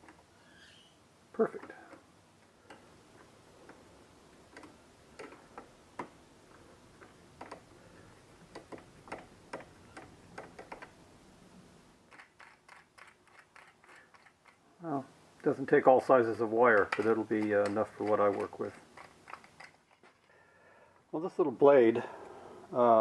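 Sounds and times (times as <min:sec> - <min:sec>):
small metal parts clicking: 0:12.1 - 0:14.7, 0:16.7 - 0:20.3.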